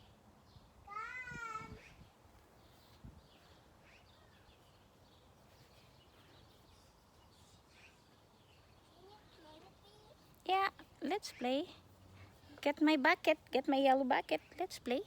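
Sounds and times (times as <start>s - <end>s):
faint bird chirps: 1.3s - 10.3s.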